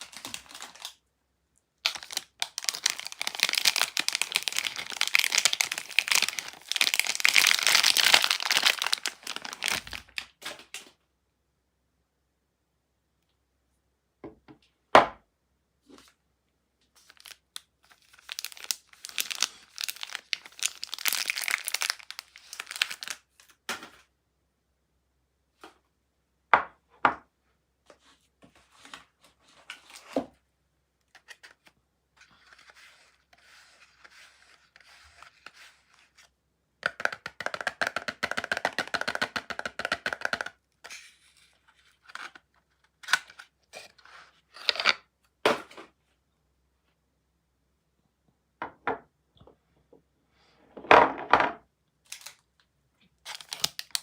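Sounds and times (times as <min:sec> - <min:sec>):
packaging rustling: 0:00.0 - 0:01.0, 0:01.8 - 0:10.8, 0:17.0 - 0:23.2, 0:53.2 - 0:54.0
packaging tearing: 0:00.0 - 0:01.0, 0:01.8 - 0:10.7, 0:17.0 - 0:23.2, 0:52.1 - 0:52.4, 0:53.2 - 0:54.0.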